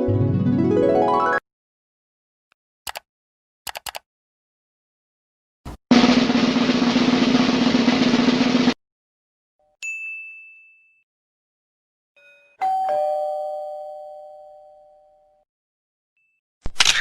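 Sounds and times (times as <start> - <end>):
drum roll: 5.9 - 8.8
two-note doorbell chime: 12.2 - 15.4.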